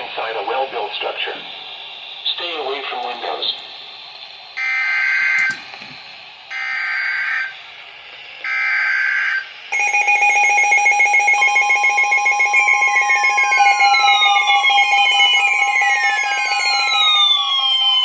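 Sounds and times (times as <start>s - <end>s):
pulsing electronic alert alarm: 4.6s - 5.7s, 6.5s - 7.6s, 8.5s - 18.0s
alert data tone bursts: 8.5s - 18.0s.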